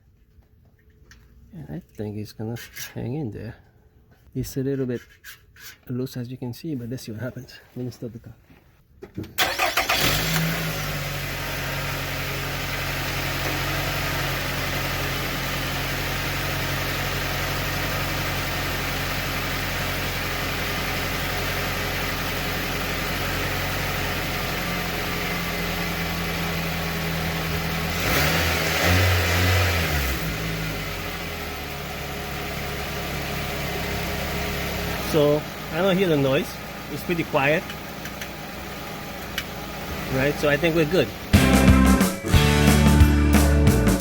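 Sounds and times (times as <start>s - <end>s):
car engine idling: 9.4s - 27.9s, 30.1s - 44.0s.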